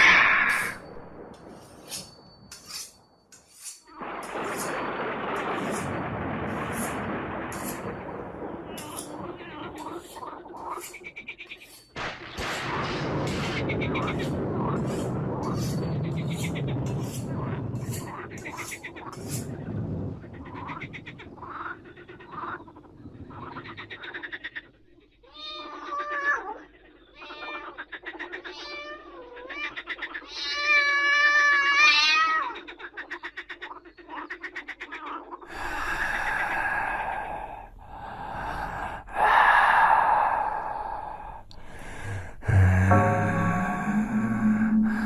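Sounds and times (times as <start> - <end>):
loud breathy hisses: 35.5 - 42.6
rattling growl: 35.6 - 45.0.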